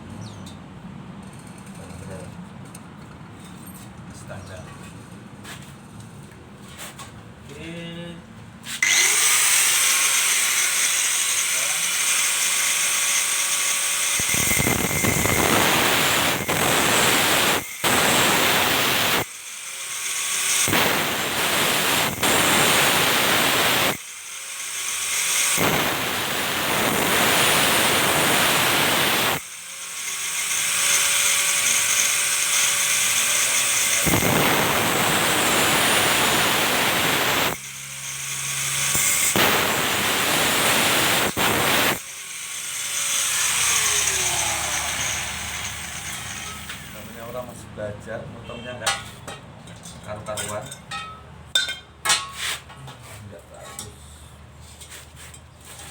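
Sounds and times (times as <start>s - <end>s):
welding arc crackling: 8.8s - 47.3s.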